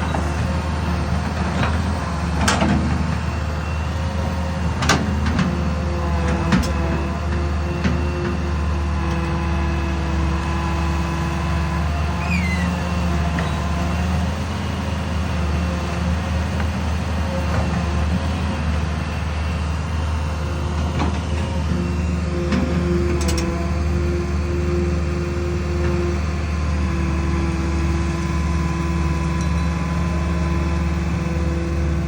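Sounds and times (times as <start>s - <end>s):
excavator diesel engine running: 0.0s - 32.0s
brief falling squeak: 12.2s - 12.8s.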